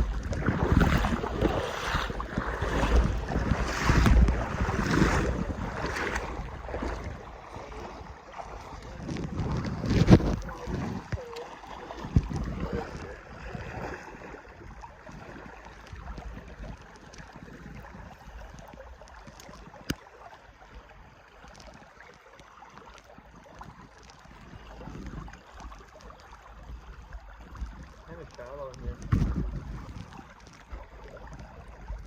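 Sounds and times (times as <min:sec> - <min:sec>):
wind buffeting microphone: 0:00.0 - 0:15.4, 0:26.7 - 0:32.0
stream rushing: 0:00.0 - 0:16.2.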